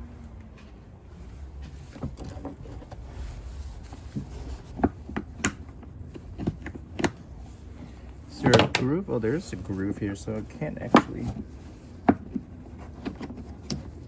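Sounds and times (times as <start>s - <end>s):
hands clicking and knocking: 4.2s - 7.3s.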